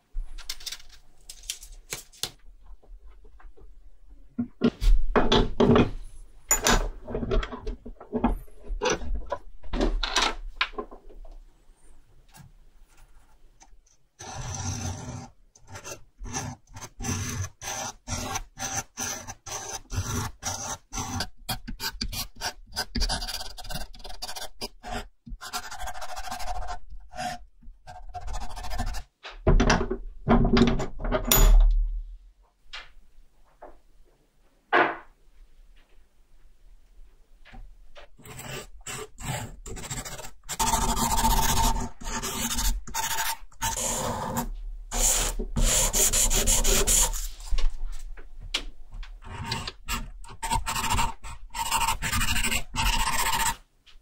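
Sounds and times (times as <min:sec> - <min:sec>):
scraping and rubbing strokes: 0:38.0 - 0:48.1.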